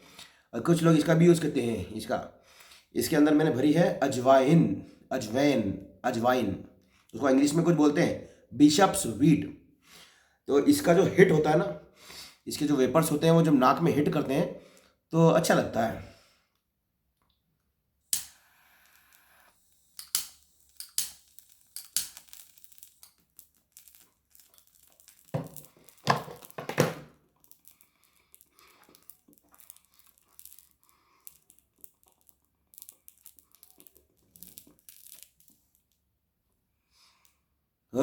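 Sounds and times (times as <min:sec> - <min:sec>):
container rustling and crinkling: 0:21.2 - 0:36.0.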